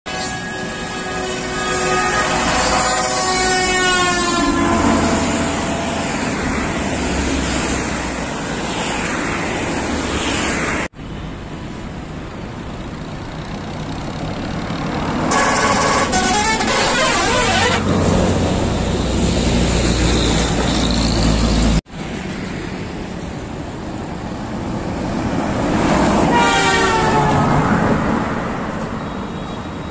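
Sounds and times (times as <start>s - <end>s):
bus multi-tone horns: 0.1s - 7.6s, 15.2s - 18.1s, 26.1s - 27.8s, 28.8s - 29.9s
engine and traffic rumble: 0.1s - 29.9s.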